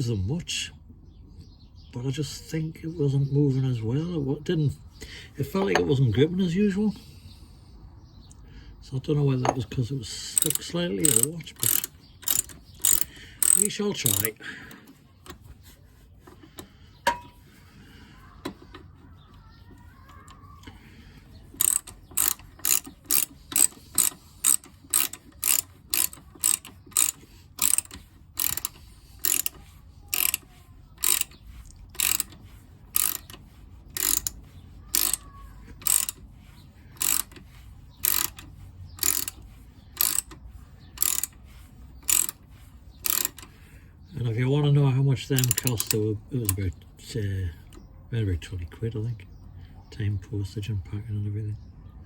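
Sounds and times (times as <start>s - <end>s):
ratchet wrench clicking: 10.3s - 15.5s, 21.5s - 36.3s, 36.9s - 41.4s, 42.0s - 43.6s, 45.4s - 46.6s.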